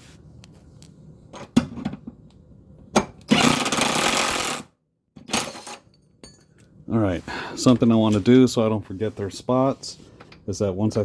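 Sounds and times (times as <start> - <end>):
power tool loosening bolt: 3.2 - 5.8.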